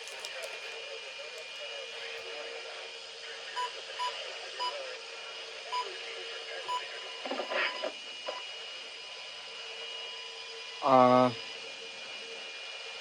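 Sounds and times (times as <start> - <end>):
radio static hiss: 0.0 - 8.4.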